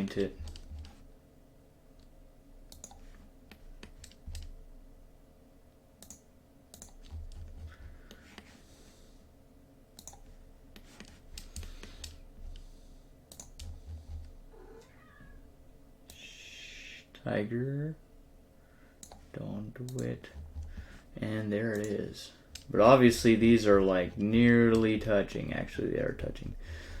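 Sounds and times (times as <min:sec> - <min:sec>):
low steady hum: 0:00.0 - 0:27.0
mouse clicks: 0:06.0 - 0:07.1, 0:10.0 - 0:10.2, 0:13.3 - 0:13.7.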